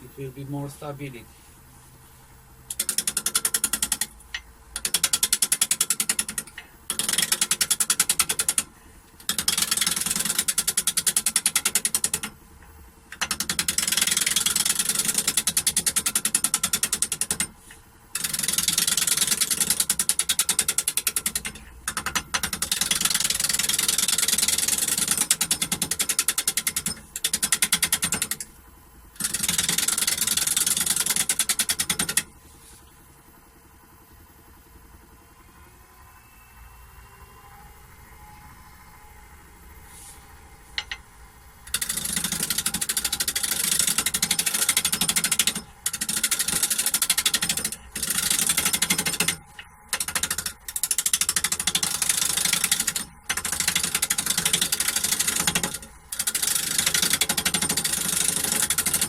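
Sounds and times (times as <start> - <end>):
gouge rattling on spinning wood: 4.8 - 12.3, 13.2 - 17.6, 18.2 - 28.4, 29.2 - 32.3, 41.7 - 59.0.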